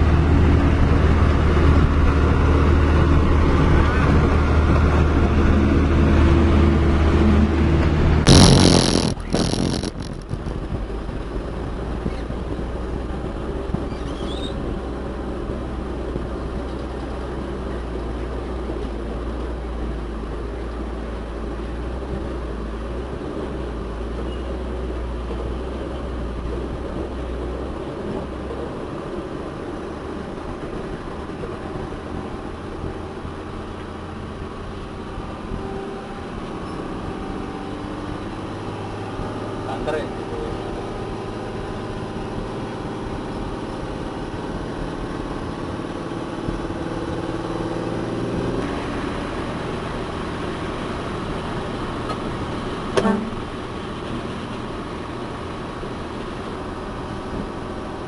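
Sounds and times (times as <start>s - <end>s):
heavy diesel engine running: 0.0s - 58.0s
sudden loud rush of noise: 1.0s - 11.1s
short bangs: 8.2s - 10.5s.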